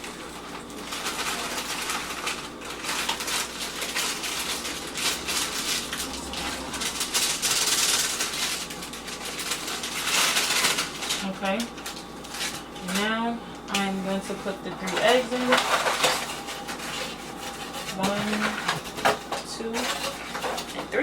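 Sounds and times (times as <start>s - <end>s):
cake mix pouring from bag: 0.0s - 13.0s.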